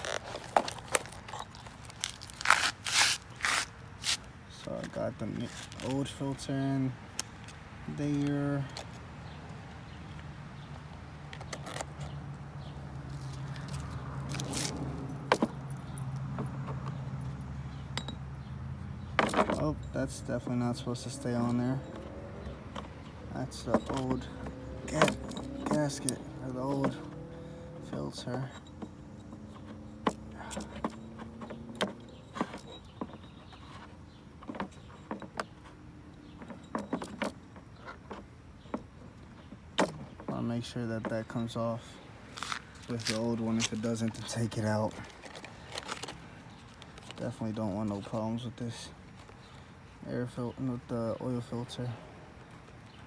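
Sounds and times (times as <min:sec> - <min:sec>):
metal parts and tools clinking: 0:10.0 - 0:49.6.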